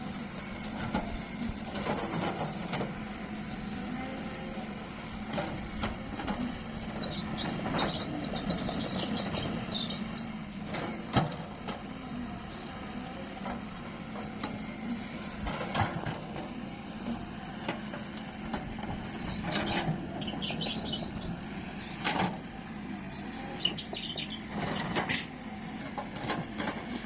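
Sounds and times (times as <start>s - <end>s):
diesel engine running: 0.0s - 27.0s
high chirping: 6.7s - 10.5s, 20.2s - 21.7s, 23.6s - 24.4s.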